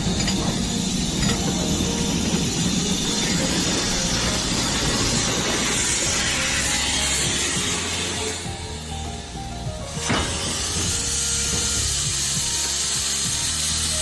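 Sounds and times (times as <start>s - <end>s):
steam hissing: 0.0s - 14.0s
steam train rumbling: 0.0s - 14.0s.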